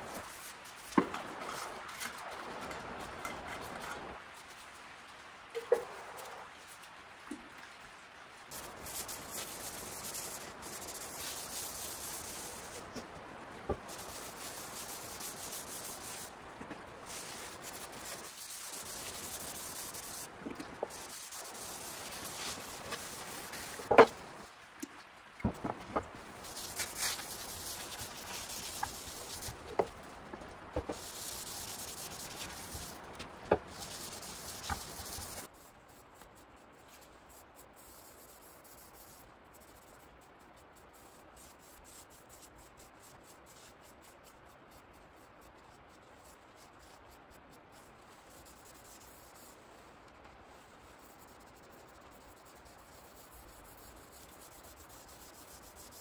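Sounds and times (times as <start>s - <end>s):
sandpaper scratching on wood: 8.5s - 12.9s, 13.9s - 16.3s, 17.1s - 24.1s, 26.4s - 29.9s, 30.8s - 35.5s, 50.9s - 56.0s.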